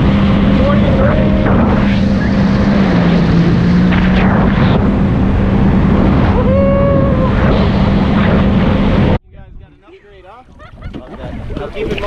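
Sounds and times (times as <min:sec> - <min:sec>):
jet ski engine running: 0:00.0 - 0:09.2
rush of wind and water: 0:00.0 - 0:12.0.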